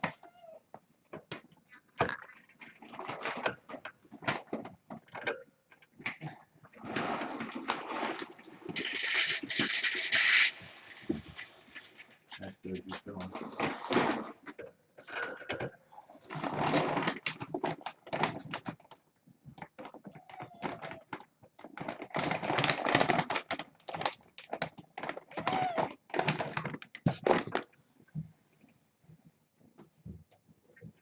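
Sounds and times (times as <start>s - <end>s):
kittens crunching dry kibble: 19.7s - 25.4s.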